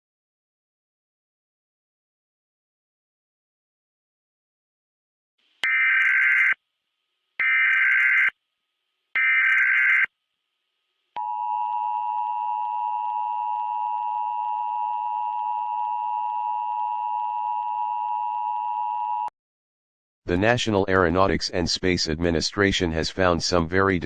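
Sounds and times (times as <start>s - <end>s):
digital data tone bursts: 5.6s - 6.6s, 7.4s - 8.3s, 9.2s - 10.1s.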